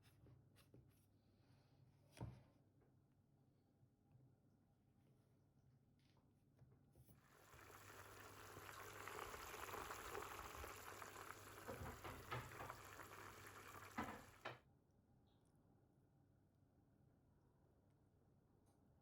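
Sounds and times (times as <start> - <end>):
syrup sizzling and crackling: 7.3 - 14.5.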